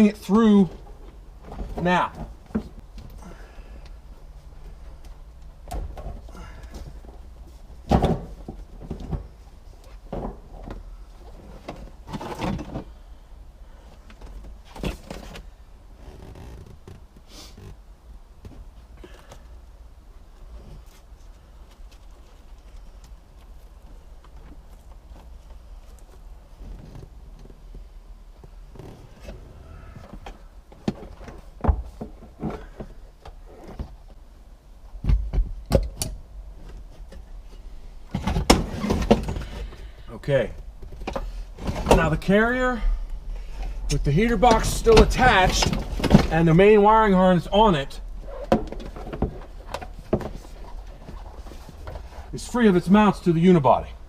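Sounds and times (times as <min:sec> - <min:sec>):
plastic parts scraping and rustling: 0:05.8 - 0:13.0, 0:43.4 - 0:47.0, 0:48.1 - 0:52.4.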